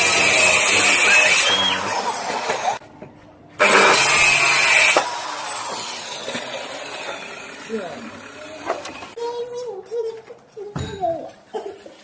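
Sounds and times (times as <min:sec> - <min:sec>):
power tool motor running on wood: 0:00.0 - 0:02.8, 0:03.6 - 0:09.2.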